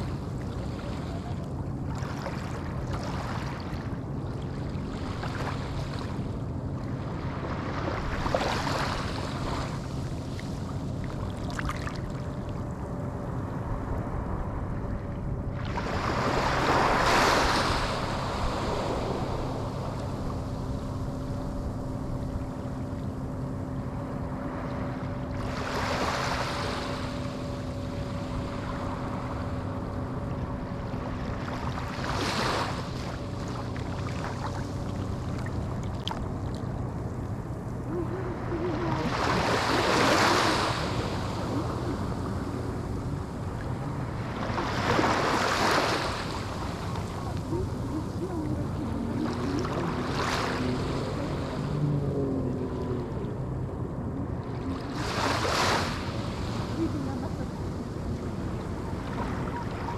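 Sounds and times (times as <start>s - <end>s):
faint low hum: 0.0s - 59.9s
ocean waves breaking on shore: 0.0s - 59.9s.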